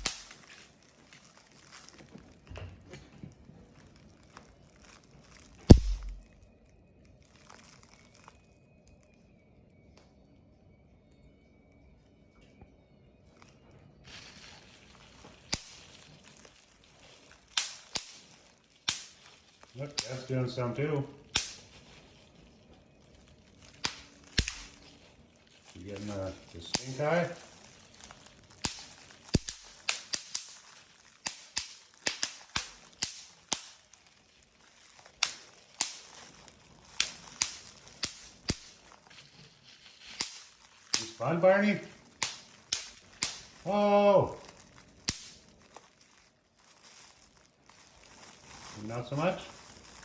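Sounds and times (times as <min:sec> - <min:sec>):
bubble wrap crinkling: 0:00.0 - 0:09.8, 0:11.4 - 0:50.0.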